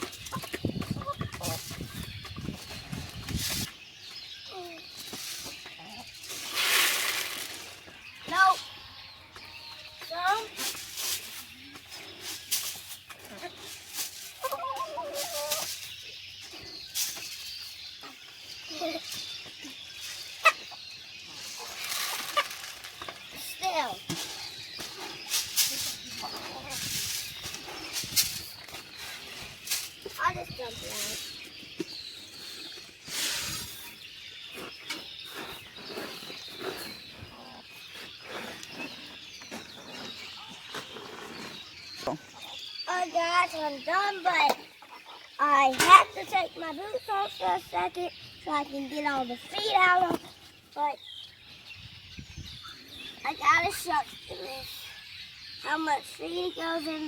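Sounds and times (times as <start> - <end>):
feed poured from bucket: 6.3 - 7.8
hens clucking: 13.1 - 15.7.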